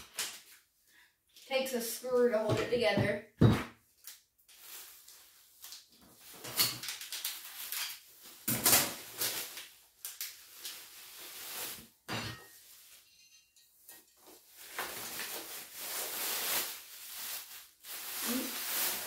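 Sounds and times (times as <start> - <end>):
packaging rustling: 4.5 - 8.4, 14.5 - 19.0.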